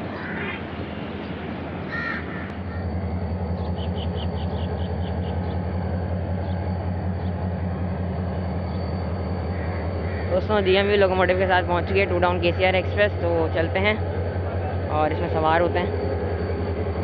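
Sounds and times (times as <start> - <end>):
diesel locomotive engine droning: 0.0 - 17.0
crows cawing: 0.1 - 0.6, 1.9 - 3.0, 9.5 - 10.3.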